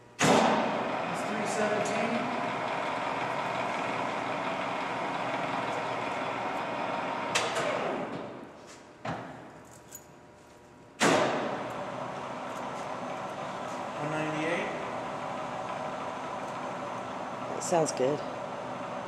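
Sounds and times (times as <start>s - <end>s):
lathe starting up: 0.2s - 8.3s, 11.6s - 19.0s
lathe running: 0.6s - 8.1s, 11.6s - 19.0s
spindle winding down: 0.8s - 8.1s.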